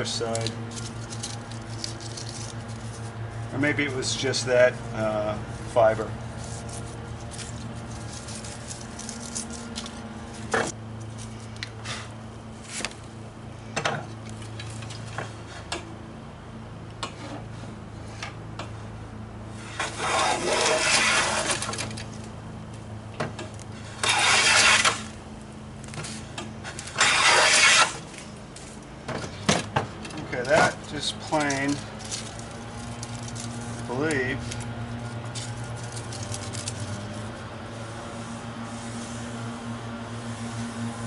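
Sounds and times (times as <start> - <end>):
steady low hum: 0.0 - 41.0
hand plane scraping wood: 19.6 - 21.8, 23.8 - 25.1, 26.7 - 28.0.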